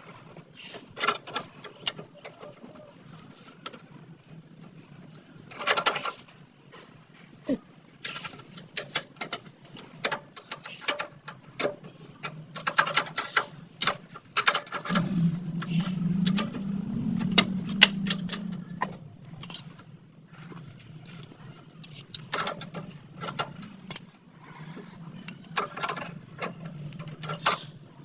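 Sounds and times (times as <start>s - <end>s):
steady low hum: 14.8s - 21.8s
hand tools clanking on metal: 21.7s - 24.2s.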